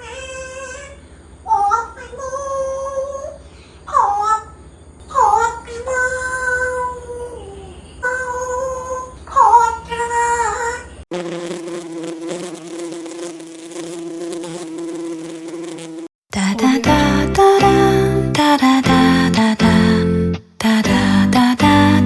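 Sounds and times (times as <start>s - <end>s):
fluttering buzz: 11.1s - 16.1s.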